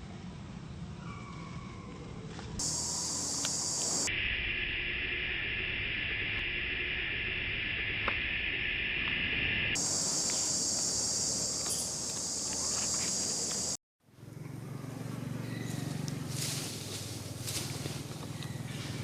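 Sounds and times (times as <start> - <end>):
insect chorus drone: 2.6 - 13.8
faint clicks: 3.3 - 4.0.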